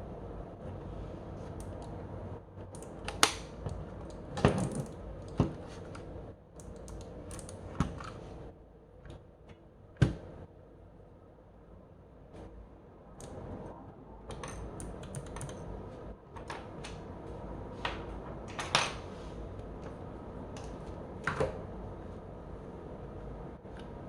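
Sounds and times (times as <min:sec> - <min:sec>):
mechanical keyboard typing: 0:14.3 - 0:15.7.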